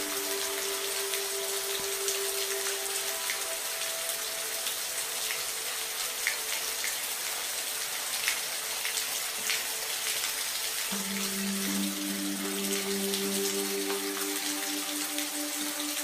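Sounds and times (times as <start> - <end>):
raindrops ticking: 0.0 - 7.3, 8.2 - 16.0
steady rain hiss: 0.0 - 16.0.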